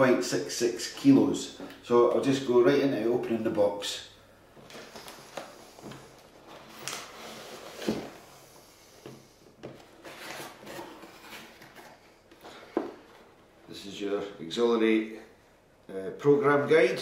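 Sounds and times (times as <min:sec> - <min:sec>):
rustling and scraping: 0:04.6 - 0:13.4.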